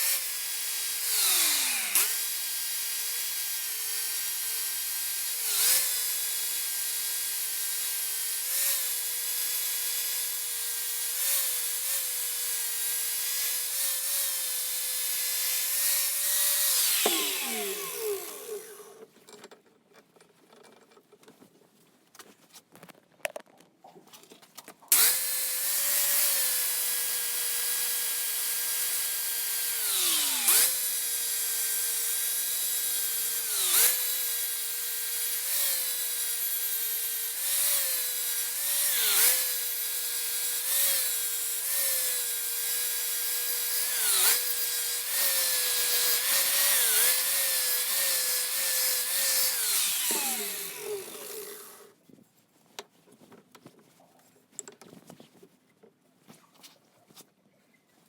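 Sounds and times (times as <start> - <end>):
high-speed power tool whining: 0.0 - 19.0, 24.9 - 51.9.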